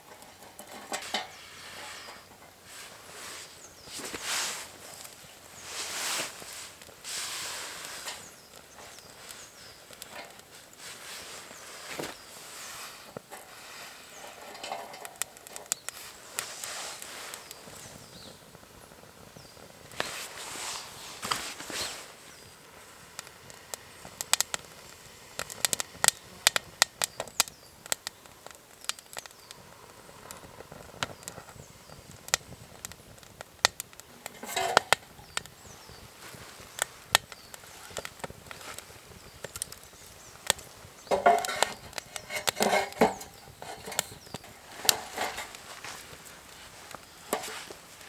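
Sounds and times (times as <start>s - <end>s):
rustling or scraping: 0.0s - 18.1s, 19.6s - 22.2s, 34.0s - 48.0s
wood snapping and crackling: 3.8s - 48.0s.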